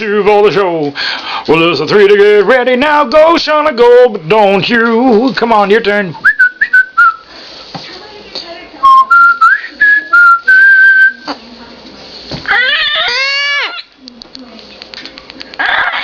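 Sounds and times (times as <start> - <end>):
cockatoo whistling a tune: 6.2 - 7.2, 8.9 - 11.3
cockatoo call: 12.5 - 13.9.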